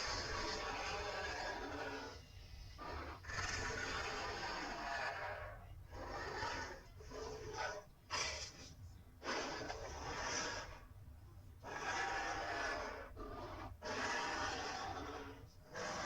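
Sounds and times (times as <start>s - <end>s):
creature growl-roars: 2.8s - 7.5s, 11.6s - 16.0s.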